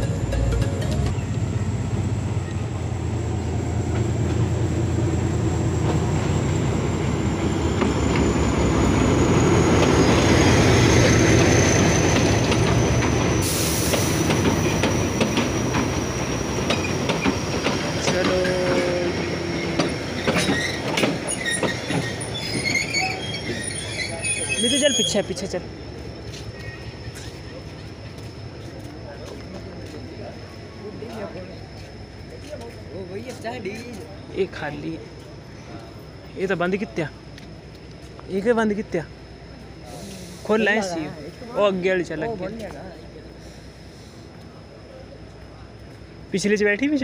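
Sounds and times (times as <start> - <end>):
train wheels clattering over rails: 0.1 - 24.2
thin high wheel squeal: 19.5 - 25.5.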